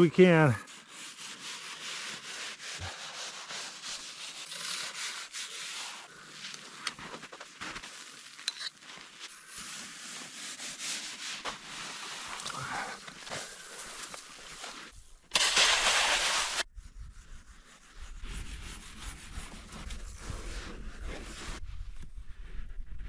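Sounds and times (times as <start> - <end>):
blade scraping snow: 0.4 - 16.7.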